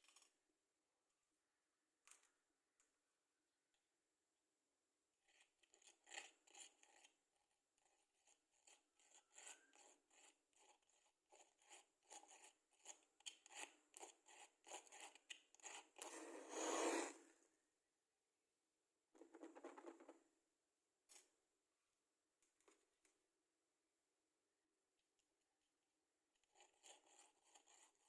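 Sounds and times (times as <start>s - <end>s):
matchsticks scratching: 8.7s - 17.2s.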